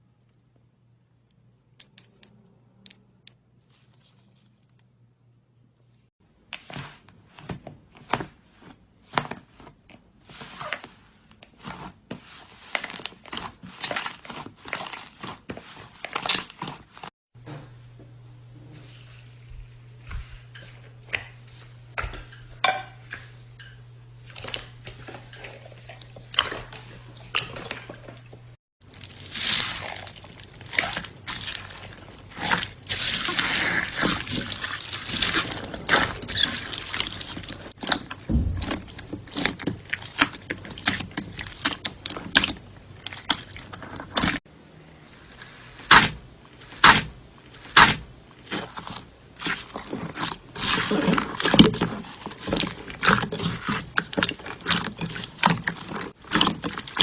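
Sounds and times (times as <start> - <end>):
slime squelching by hand: 10.3 - 17.1, 24.2 - 44.4, 45.4 - 57.0.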